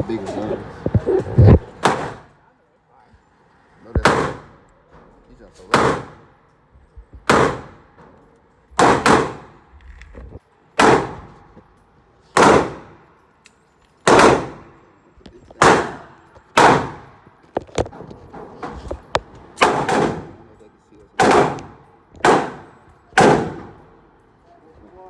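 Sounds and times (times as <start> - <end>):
gunshots with echo: 1.4 - 2.4, 4.0 - 4.6, 5.7 - 6.3, 7.2 - 7.9, 8.8 - 9.7, 10.8 - 11.4, 12.4 - 13.1, 14.0 - 14.8, 15.6 - 17.2, 19.5 - 20.5, 21.2 - 23.9.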